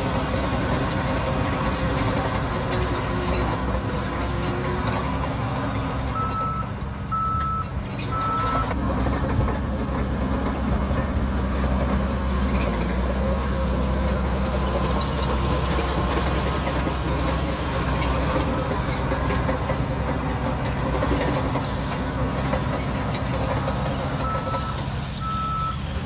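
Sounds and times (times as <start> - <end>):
bulldozer diesel engine running: 0.0 - 26.0
reversing alarm beeps: 6.1 - 8.8, 24.2 - 25.8.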